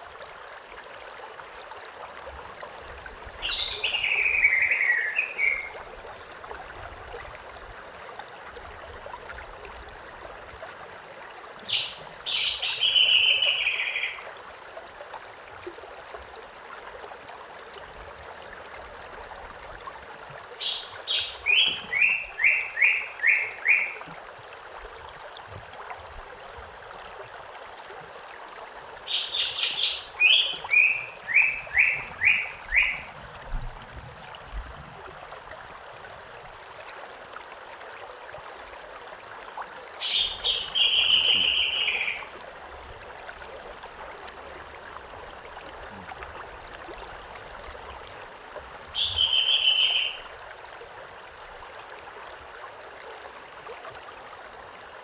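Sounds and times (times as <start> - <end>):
stream rushing: 0.0 - 55.0
songbird singing: 3.4 - 5.8, 11.6 - 14.2, 20.6 - 24.1, 29.0 - 33.2, 40.0 - 42.4, 48.9 - 50.3.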